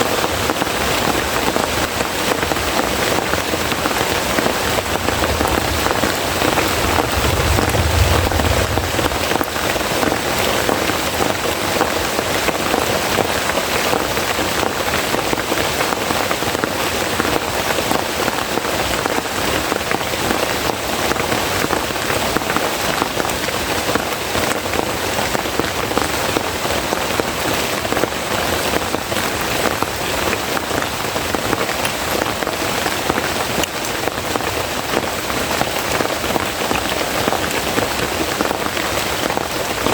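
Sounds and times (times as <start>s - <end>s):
heavy rain falling: 0.0s - 39.9s
low rumble: 4.0s - 11.1s.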